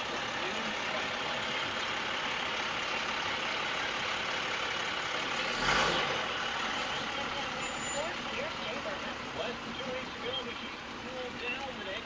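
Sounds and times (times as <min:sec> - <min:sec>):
car engine running: 0:00.0 - 0:12.0.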